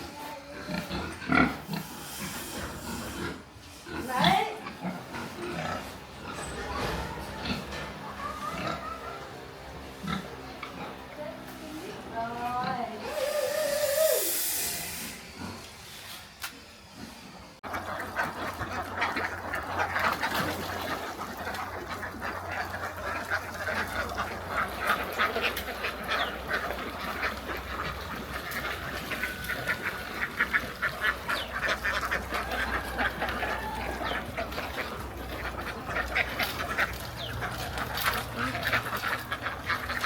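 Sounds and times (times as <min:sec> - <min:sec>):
waterfowl quacking and honking: 0:05.8 - 0:11.1, 0:17.6 - 0:40.0.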